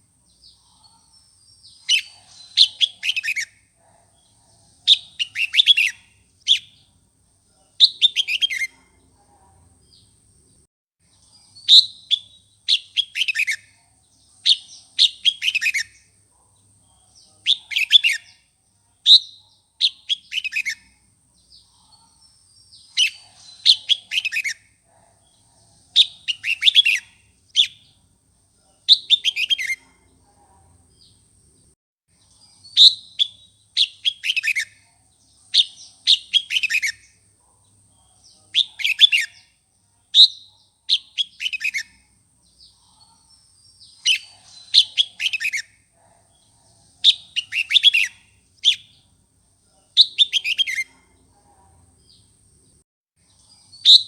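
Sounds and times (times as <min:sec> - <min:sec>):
bird whistling song: 0:01.8 - 0:03.6, 0:04.9 - 0:06.8, 0:07.8 - 0:08.7, 0:11.6 - 0:13.8, 0:14.5 - 0:16.1, 0:19.1 - 0:20.8, 0:22.9 - 0:24.6, 0:26.0 - 0:27.9, 0:28.9 - 0:29.8, 0:32.7 - 0:34.8, 0:35.6 - 0:37.2, 0:38.6 - 0:39.5, 0:40.2 - 0:42.0, 0:44.0 - 0:45.8, 0:47.0 - 0:49.0, 0:50.0 - 0:50.9, 0:53.7 - 0:54.0.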